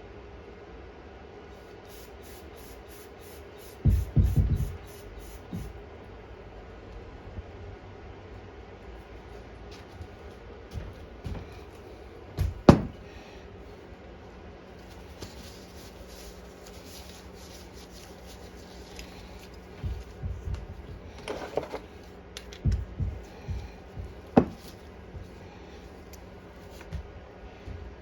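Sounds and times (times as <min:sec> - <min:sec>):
faint steady hum: 0:00.0 - 0:28.0
soft low knocks: 0:19.7 - 0:21.2, 0:22.5 - 0:25.4.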